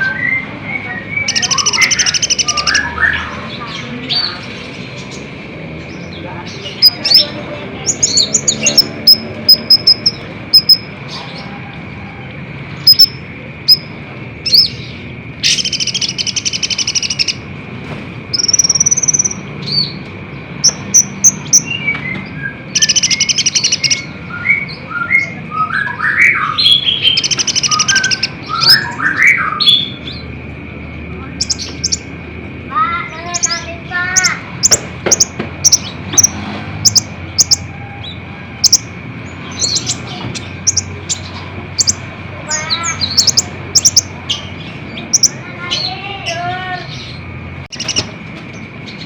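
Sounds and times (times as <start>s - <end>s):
bird singing high chirps: 0.0s - 5.3s, 5.9s - 11.6s, 12.8s - 17.4s, 18.3s - 20.0s, 20.6s - 30.3s, 31.3s - 49.0s
rapid buzzy bird trill: 1.2s - 4.4s, 6.7s - 11.0s, 12.8s - 17.5s, 18.3s - 20.0s, 22.5s - 24.1s, 25.9s - 30.2s, 32.7s - 48.1s.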